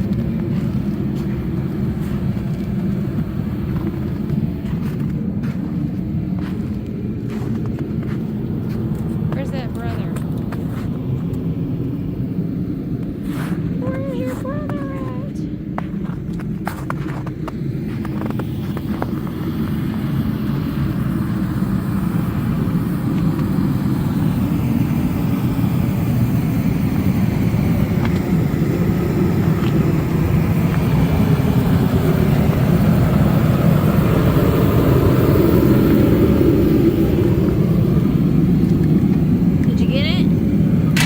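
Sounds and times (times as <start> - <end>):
truck diesel engine running: 0.0 - 10.8.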